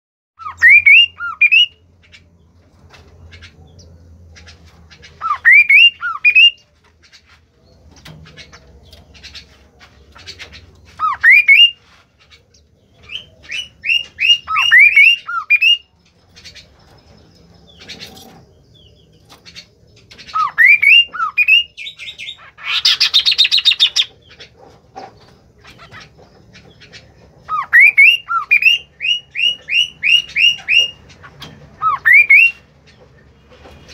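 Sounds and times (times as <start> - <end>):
bird whistling rising notes: 5.2 - 6.6, 31.8 - 32.6
harsh rasping bird call: 5.2 - 6.6, 31.8 - 32.6.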